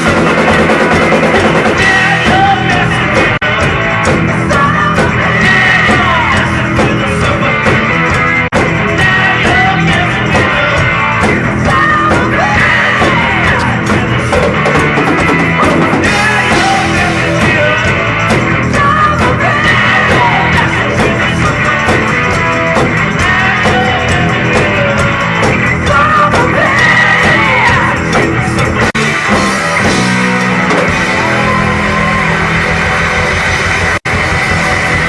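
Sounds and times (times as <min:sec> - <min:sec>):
loud rock song: 0:00.0 - 0:35.0
person singing and shouting: 0:01.3 - 0:03.8, 0:08.9 - 0:14.5, 0:15.4 - 0:22.3, 0:23.1 - 0:29.8.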